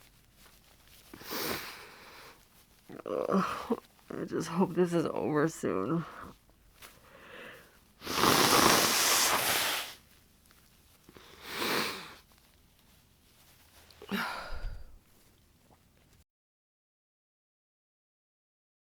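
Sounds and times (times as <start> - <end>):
sniffle: 1.0 - 2.5, 6.1 - 10.0, 11.1 - 12.4
nose blowing into tissue: 1.0 - 2.6, 7.1 - 10.2, 11.1 - 12.4
breathy voice sound: 1.2 - 6.4, 14.0 - 15.0.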